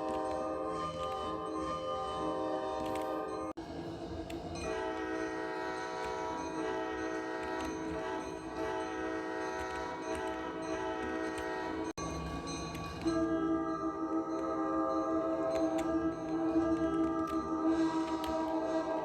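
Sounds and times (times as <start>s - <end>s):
train air horn chord: 4.6s - 11.9s.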